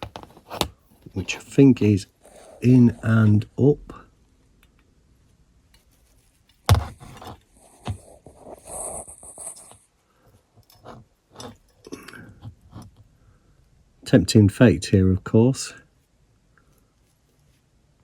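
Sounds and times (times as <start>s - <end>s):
scraping on model car: 6.0s - 9.9s.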